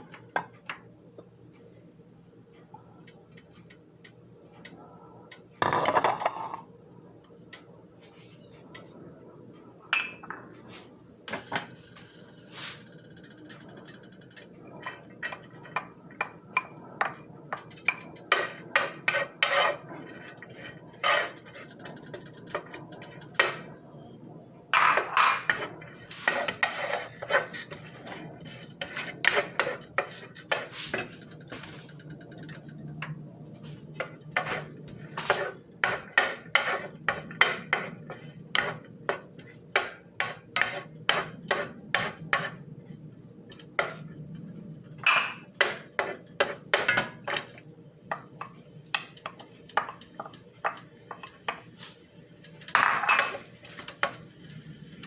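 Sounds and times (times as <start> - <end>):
utensils clinking against pots: 24.7 - 33.2, 45.0 - 51.7, 52.6 - 54.2.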